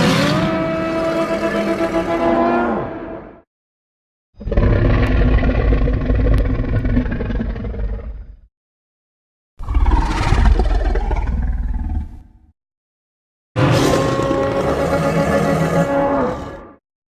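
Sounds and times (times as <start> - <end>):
monster roaring: 13.6 - 16.8.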